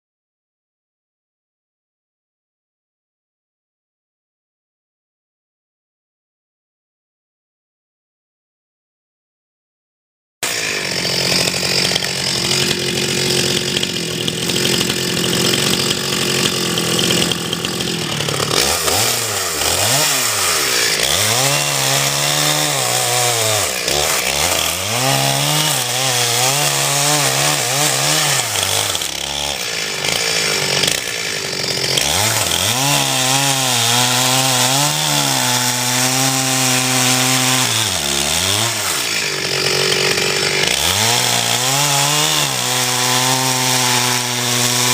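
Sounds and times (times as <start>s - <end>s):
log splitter motor running: 10.4s - 44.9s.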